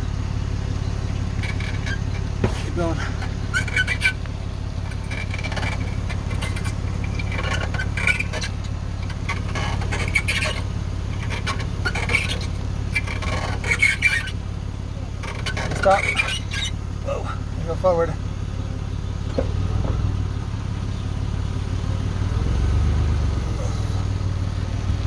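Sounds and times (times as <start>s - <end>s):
low engine hum: 0.0s - 25.0s
squeaks and scraping underneath vehicle: 0.0s - 25.0s.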